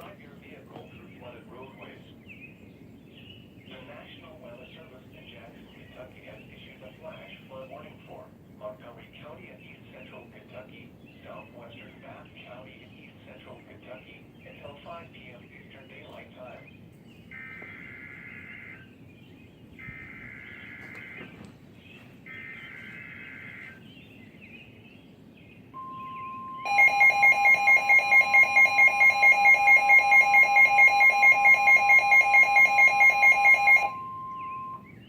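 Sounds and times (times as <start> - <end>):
steady warning alarm tone: 17.3 - 18.9, 19.8 - 21.5, 22.2 - 23.8, 25.8 - 35.0
loud pulsing electronic beep: 25.8 - 34.9.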